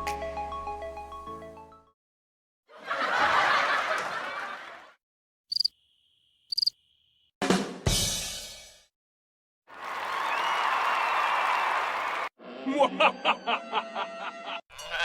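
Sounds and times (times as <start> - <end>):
high cricket-like chirps: 5.5 - 7.3.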